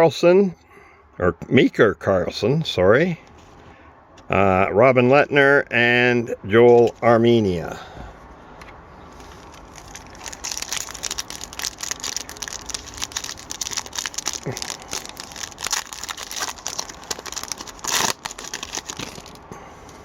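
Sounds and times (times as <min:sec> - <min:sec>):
wrapper tearing and crinkling: 0:09.2 - 0:19.5.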